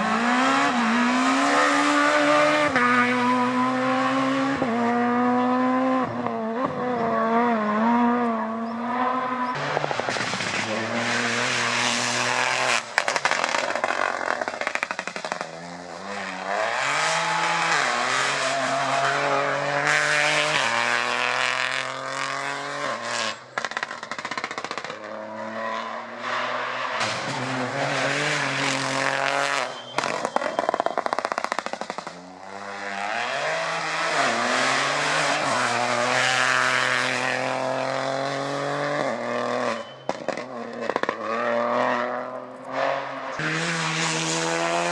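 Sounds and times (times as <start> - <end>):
rally car engines revving: 0.0 - 44.9
sharp cracks: 12.8 - 15.5, 30.0 - 32.2.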